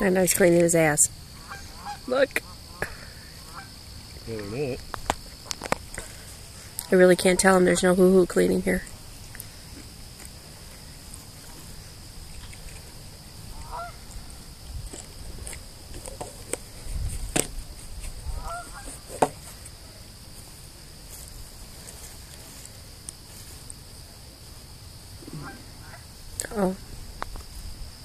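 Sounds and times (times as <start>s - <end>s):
waterfowl honking: 1.4s - 3.8s, 6.8s - 7.8s, 13.5s - 14.3s, 18.2s - 19.0s, 25.4s - 26.1s.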